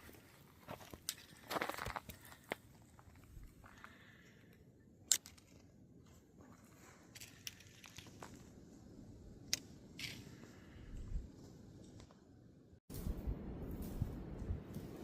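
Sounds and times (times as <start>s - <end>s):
footsteps crunching on trail: 0.0s - 4.2s.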